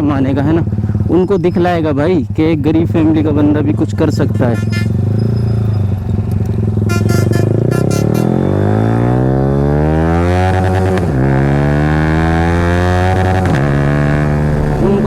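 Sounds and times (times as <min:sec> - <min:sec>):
motorcycle engine accelerating: 0:00.0 - 0:15.0.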